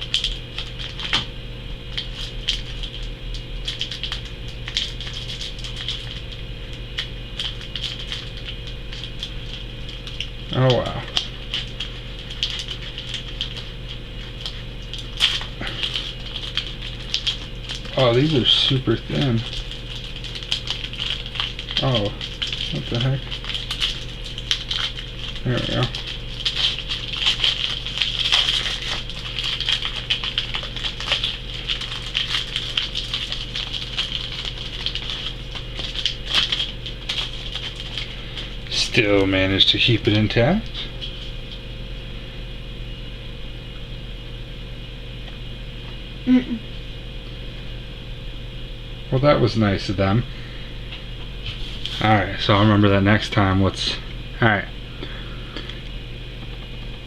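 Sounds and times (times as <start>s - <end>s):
foil wrapper crinkling: 0.0s - 41.7s, 51.4s - 52.6s
steady low hum: 0.0s - 57.0s.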